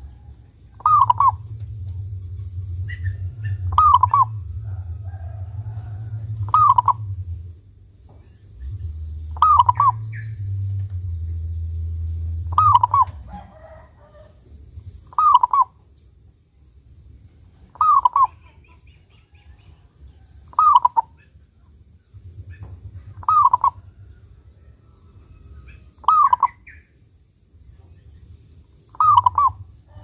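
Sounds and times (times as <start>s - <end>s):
dove cooing: 0.0s - 1.8s, 2.8s - 7.4s, 8.6s - 10.9s, 12.4s - 14.3s, 15.1s - 15.7s, 17.7s - 18.9s, 20.5s - 21.1s, 22.5s - 24.2s, 25.8s - 26.7s, 28.9s - 30.0s
low hum: 0.0s - 18.2s, 19.0s - 30.0s.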